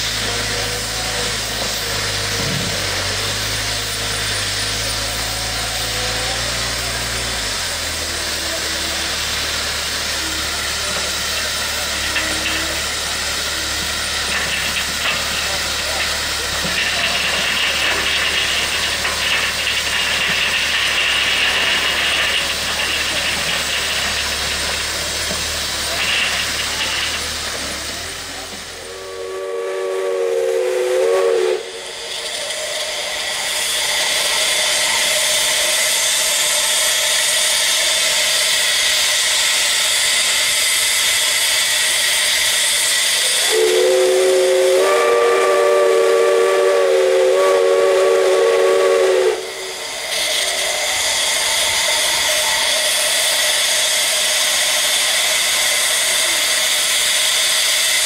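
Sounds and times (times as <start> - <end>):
steam hissing: 0.0 - 58.0
steam locomotive whistle: 28.7 - 32.1, 43.1 - 50.7.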